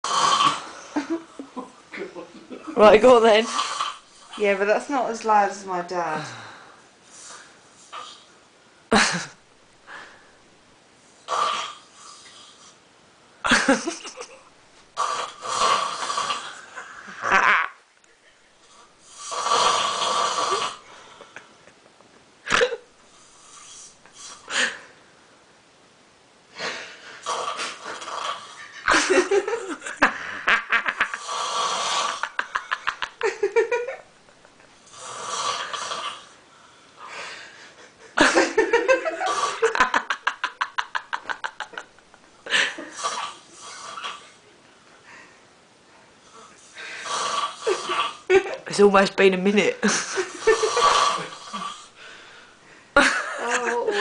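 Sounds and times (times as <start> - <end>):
man snoring: 0.0 - 0.8, 15.0 - 17.3, 19.0 - 20.8, 26.6 - 28.8, 31.0 - 33.1, 34.9 - 36.4, 39.2 - 40.2, 42.8 - 44.4, 46.3 - 48.3, 50.2 - 52.0.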